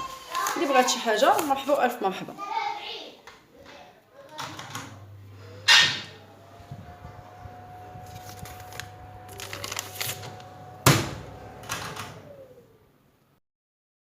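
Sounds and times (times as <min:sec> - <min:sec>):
rustling and clicking handling: 0:00.0 - 0:01.9.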